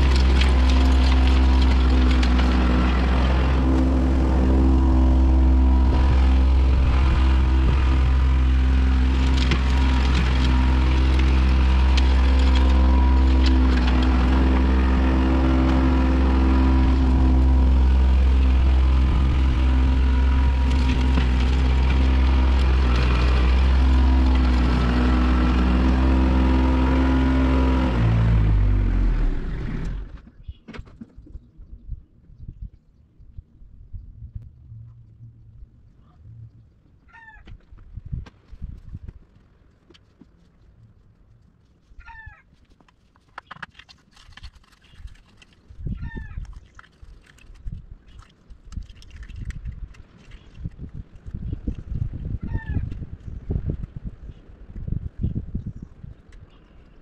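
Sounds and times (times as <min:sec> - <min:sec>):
tractor diesel engine running: 0:00.0 - 0:30.3.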